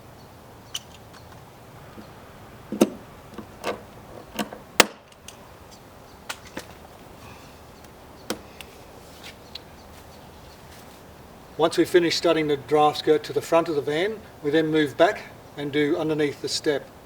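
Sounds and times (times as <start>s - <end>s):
sharp knocks and clicks of tools: 2.7s - 6.8s, 7.8s - 8.7s.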